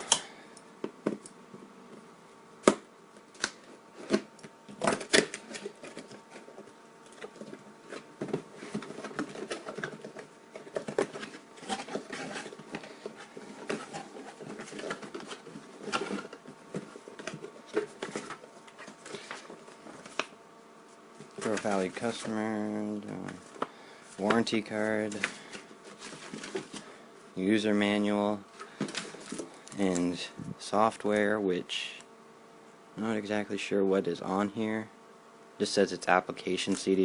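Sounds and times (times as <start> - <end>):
cardboard and paper rustling: 4.0 - 20.3, 21.2 - 27.0, 28.6 - 30.4.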